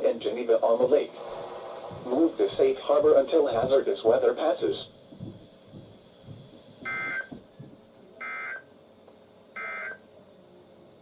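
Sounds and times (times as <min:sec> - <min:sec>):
digital data tone bursts: 0:06.8 - 0:07.3, 0:09.6 - 0:10.0.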